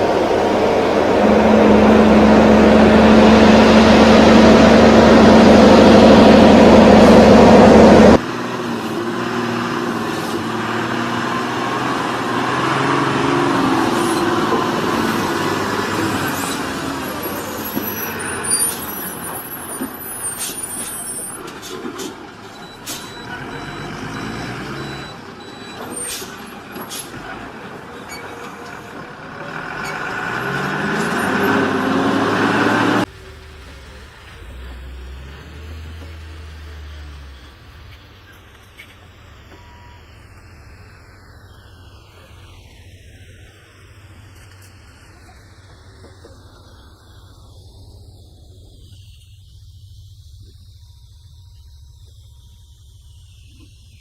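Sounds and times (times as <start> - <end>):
heavy truck engine droning: 0.0 - 54.0
quieter truck engine: 0.0 - 54.0
high squeals: 11.7 - 28.9, 29.5 - 33.0.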